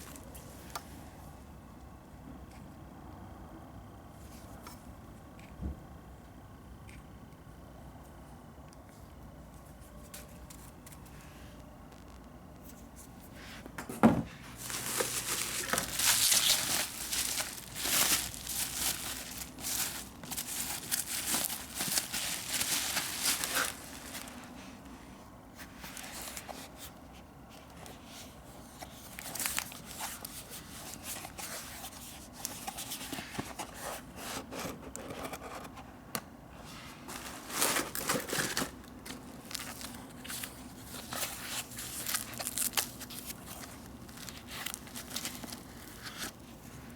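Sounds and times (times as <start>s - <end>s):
packaging crinkling and tearing: 14.6s - 24.5s, 29.1s - 31.4s, 37.4s - 46.4s.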